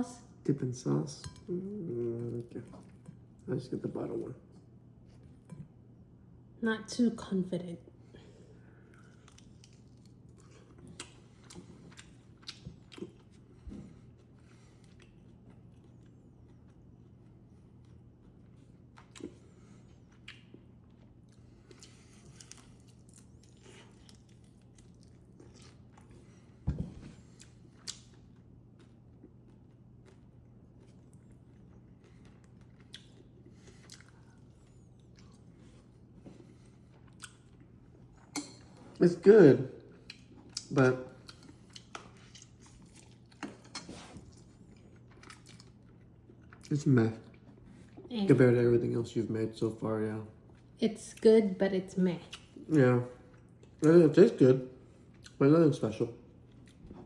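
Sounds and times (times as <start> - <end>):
chewing chicken wing: 8.8 - 26.5, 27.3 - 38.5, 40.0 - 48.0
soft biting clicks and squishes: 8.9 - 19.4, 20.0 - 26.3, 27.3 - 38.6, 40.0 - 48.1, 52.3 - 54.0.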